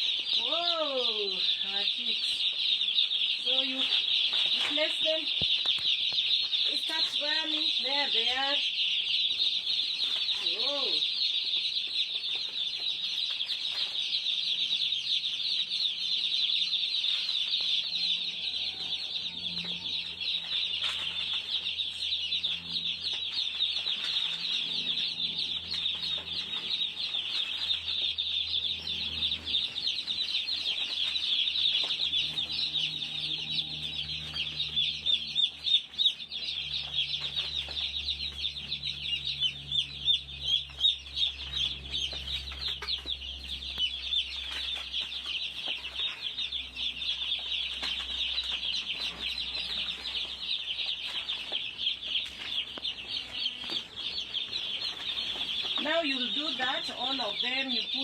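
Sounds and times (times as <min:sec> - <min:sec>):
chicks peeping: 0:00.0 - 0:58.0.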